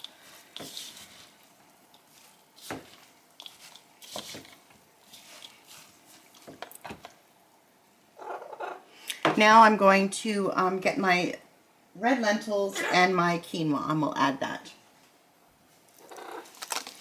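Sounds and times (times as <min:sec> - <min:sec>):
soft squishing of mash: 0:00.0 - 0:08.0, 0:15.7 - 0:17.0.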